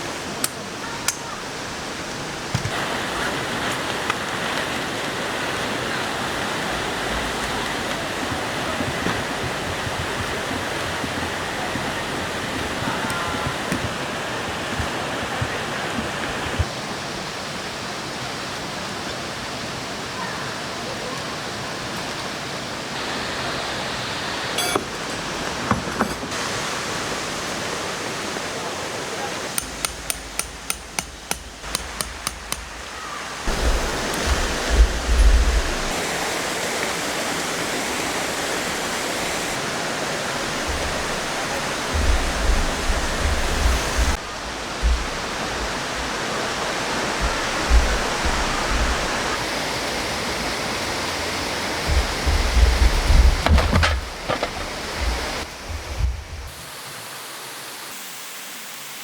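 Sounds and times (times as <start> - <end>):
rushing mountain stream: 0.0 - 59.0
low thumps: 33.5 - 36.0, 40.3 - 49.4, 51.8 - 56.5.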